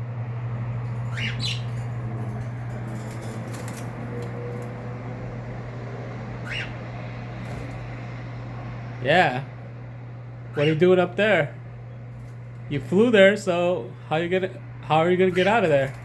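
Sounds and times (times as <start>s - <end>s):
steady low hum: 0.0s - 16.0s
birds chirping: 0.4s - 16.0s
wing flaps: 1.1s - 4.9s.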